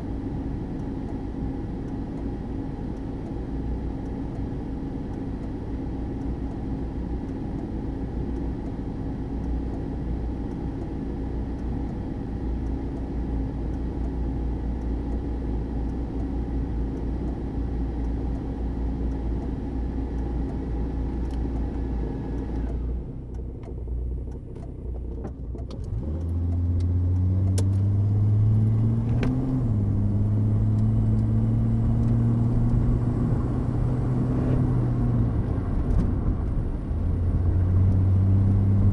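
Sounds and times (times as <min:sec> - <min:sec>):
car engine running: 0:00.0 - 0:38.9.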